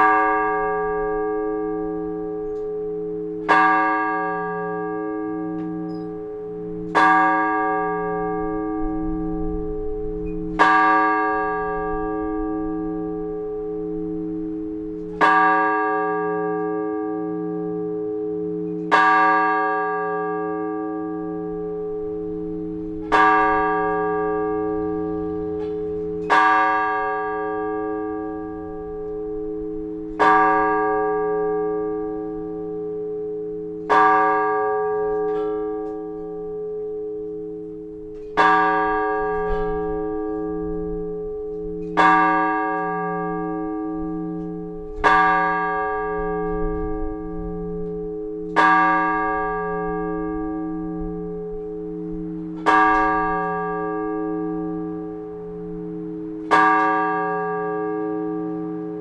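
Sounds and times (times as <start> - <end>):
large church bell tolling: 0.0 - 59.0.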